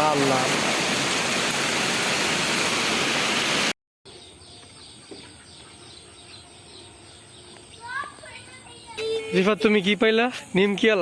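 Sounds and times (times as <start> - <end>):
storm wind and rain: 0.0 - 3.7.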